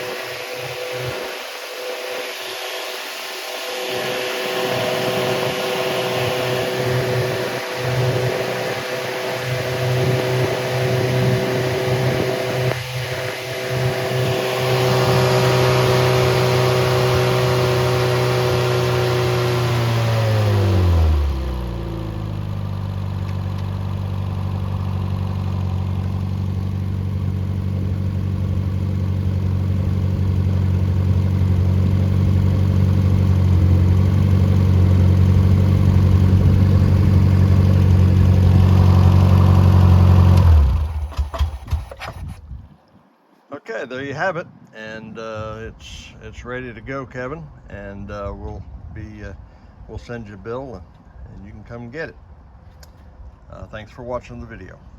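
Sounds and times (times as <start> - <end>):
car engine revving and idling: 0.0 - 42.0.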